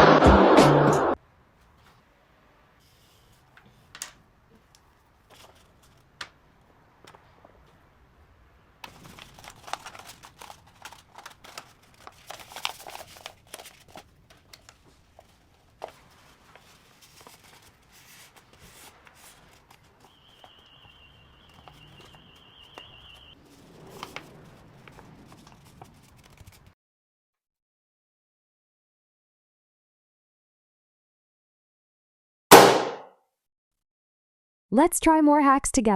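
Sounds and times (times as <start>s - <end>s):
paper rustling and crinkling: 2.8s - 6.4s, 8.8s - 26.8s.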